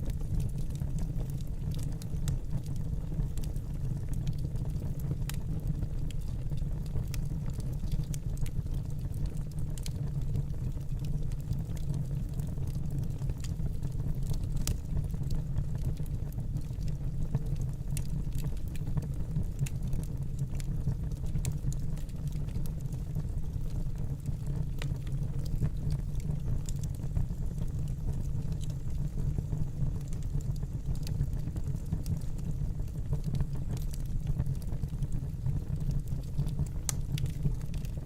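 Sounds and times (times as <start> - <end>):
fire crackling in fireplace: 0.0 - 38.0.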